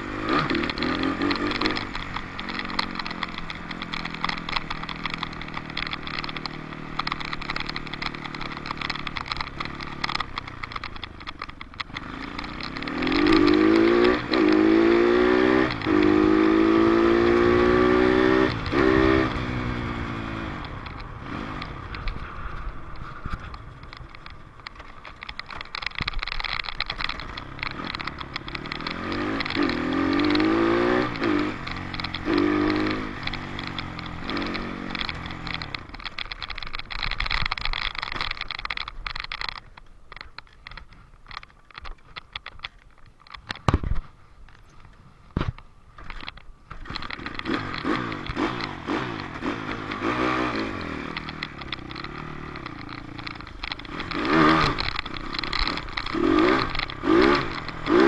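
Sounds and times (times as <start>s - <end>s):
dirt bike engine revving: 0.0s - 10.2s, 11.9s - 22.0s, 27.0s - 35.7s, 46.8s - 58.0s.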